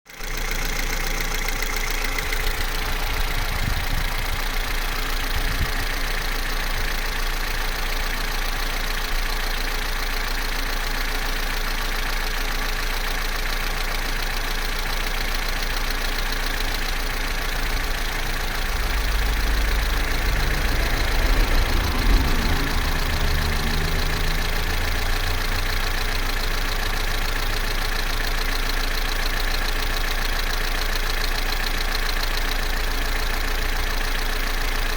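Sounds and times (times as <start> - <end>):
car engine idling: 0.1 - 34.9.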